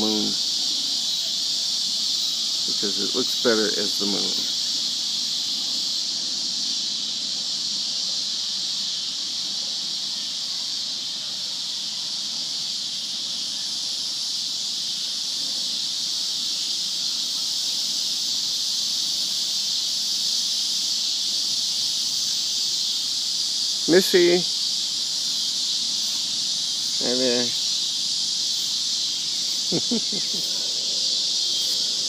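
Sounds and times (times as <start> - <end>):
cicadas buzzing: 0.0 - 32.0.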